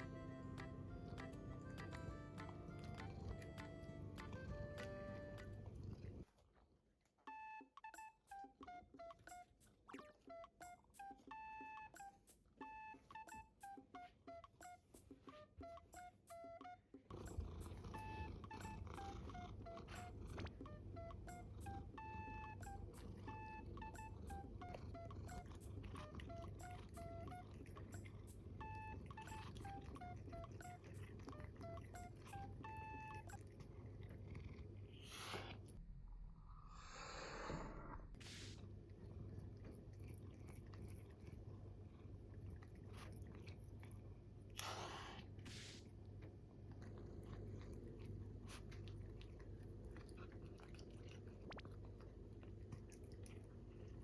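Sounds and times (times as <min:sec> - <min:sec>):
bouncy plucked melody: 0:00.0 - 0:05.8.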